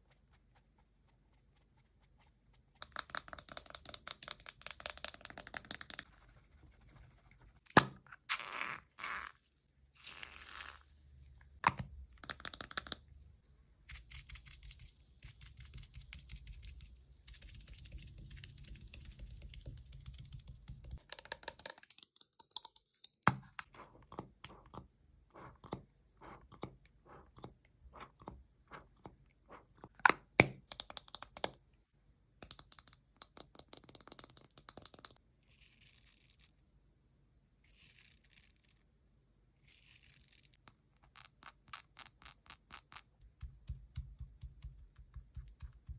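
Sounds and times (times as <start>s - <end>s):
sharp taps and clicks: 43.0s - 45.9s.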